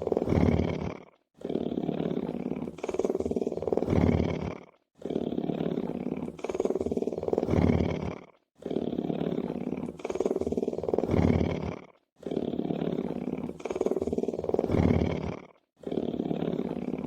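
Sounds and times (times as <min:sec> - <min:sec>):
lion purring: 0:00.0 - 0:17.0.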